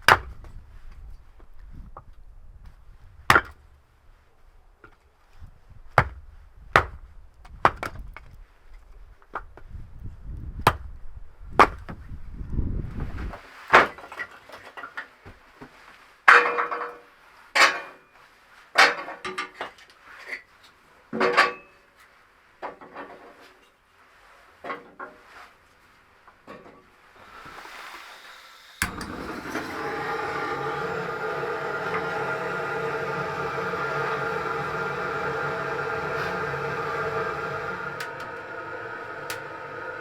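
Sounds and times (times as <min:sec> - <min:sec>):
tool knocking on wood: 0:00.0 - 0:00.5, 0:03.3 - 0:03.6, 0:06.0 - 0:07.0, 0:07.6 - 0:08.1, 0:10.7 - 0:10.9, 0:11.6 - 0:12.0.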